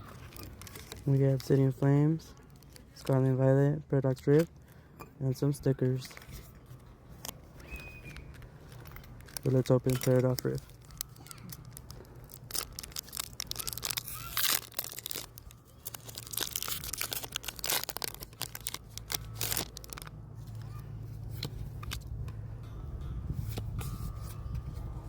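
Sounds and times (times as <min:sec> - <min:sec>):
foil wrapper tearing and crinkling: 0:00.0 - 0:03.2, 0:07.6 - 0:22.0.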